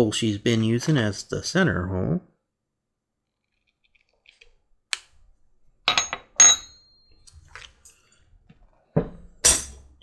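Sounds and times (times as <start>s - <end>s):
metal tools clinking on workbench: 5.9s - 8.0s, 9.4s - 9.9s.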